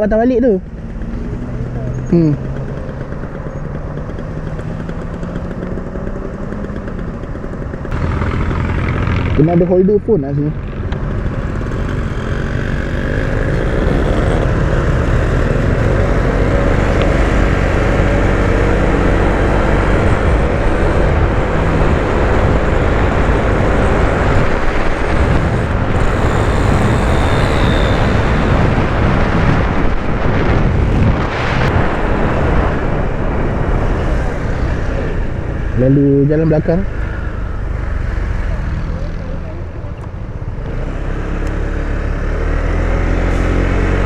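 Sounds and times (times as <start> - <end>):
road noise: 0.0 - 44.0
scooter engine: 0.0 - 44.0
wind rush over microphone: 10.5 - 35.8.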